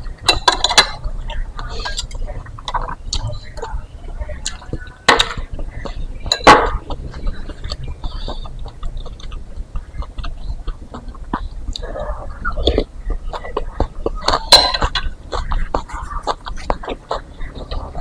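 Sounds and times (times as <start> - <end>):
wet chewing: 6.8 - 18.0.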